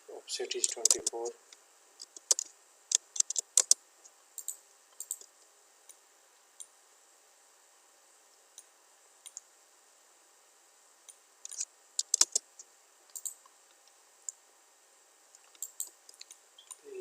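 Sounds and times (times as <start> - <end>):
computer mouse clicks: 0.6 - 1.3, 2.0 - 3.8, 4.4 - 5.3, 8.6 - 9.4, 11.5 - 13.4, 15.4 - 16.8
keyboard keystrokes: 0.6 - 1.3, 2.0 - 3.8, 11.5 - 12.4.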